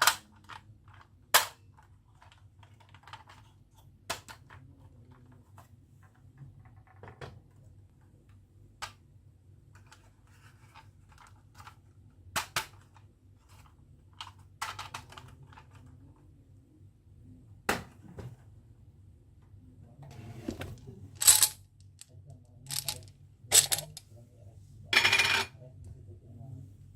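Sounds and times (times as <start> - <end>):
faint low hum: 0.2 - 26.9
faint rattling: 20.5 - 21.6, 22.6 - 24.0
marbles clacking on track: 22.7 - 24.0.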